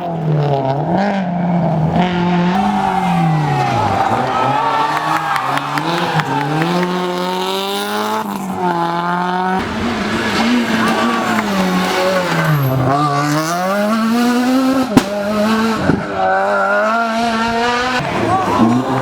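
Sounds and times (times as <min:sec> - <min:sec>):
rally car engines at full throttle: 0:00.0 - 0:19.0
sharp crack: 0:14.9 - 0:16.0.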